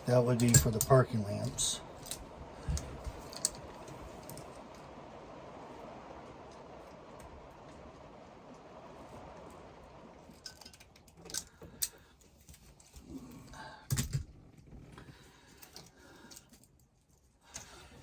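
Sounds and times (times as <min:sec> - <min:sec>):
low hiss: 0:00.0 - 0:18.0
small parts and wires rattling: 0:00.1 - 0:04.6, 0:10.2 - 0:18.0.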